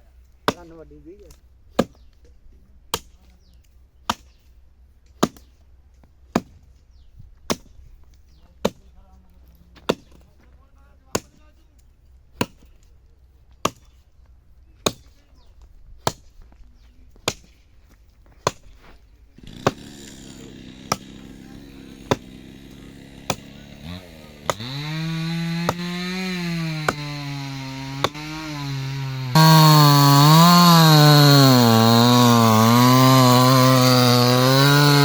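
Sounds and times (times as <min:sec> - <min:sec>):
axe chopping tree trunk: 0:01.8 - 0:02.0, 0:02.9 - 0:03.2, 0:04.0 - 0:04.4, 0:05.2 - 0:05.5, 0:06.3 - 0:06.7, 0:07.5 - 0:07.7, 0:09.8 - 0:10.2, 0:12.4 - 0:12.7, 0:13.6 - 0:14.0, 0:14.8 - 0:15.2, 0:16.0 - 0:16.3, 0:17.2 - 0:17.6, 0:18.4 - 0:18.8, 0:19.4 - 0:20.2, 0:22.0 - 0:22.4, 0:23.2 - 0:35.0.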